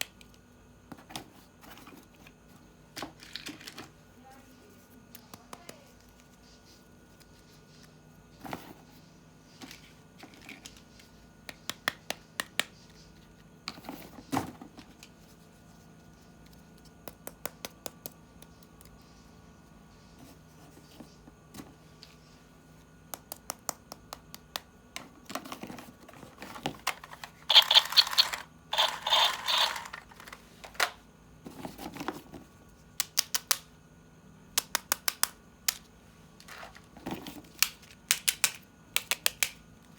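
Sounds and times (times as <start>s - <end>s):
plastic parts clicking and tapping: 23.2s - 31.0s, 36.4s - 39.6s.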